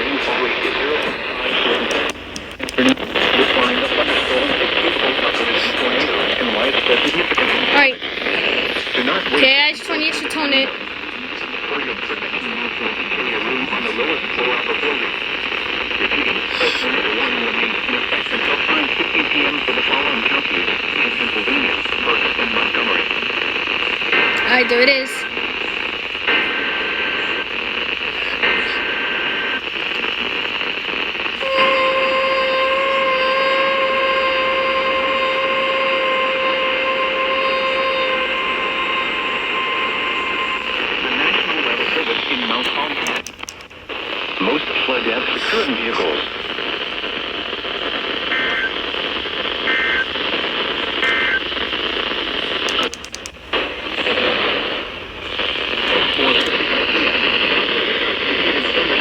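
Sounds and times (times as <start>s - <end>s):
radio static hiss: 0.0s - 59.0s
clicks: 0.6s - 3.8s, 39.4s - 44.7s, 50.9s - 53.7s
data bursts: 31.4s - 54.7s
two-tone digital data bursts: 48.3s - 48.8s, 49.6s - 50.2s, 51.0s - 51.6s.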